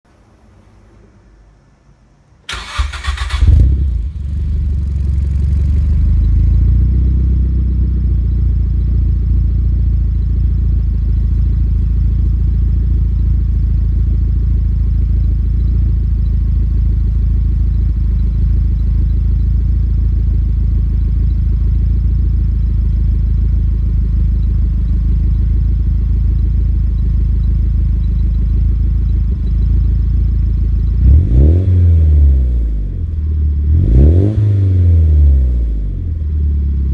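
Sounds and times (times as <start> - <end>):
car engine idling: 2.5 - 31.4.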